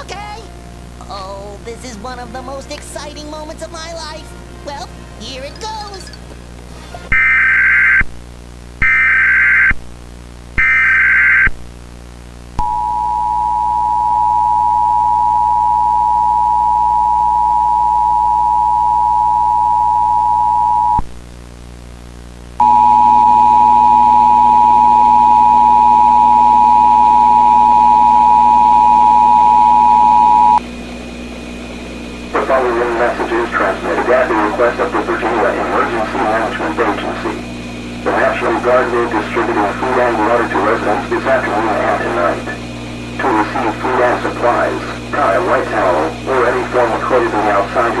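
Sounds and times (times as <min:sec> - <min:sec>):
two-tone attention signal: 0:12.6 - 0:21.0, 0:22.6 - 0:30.6.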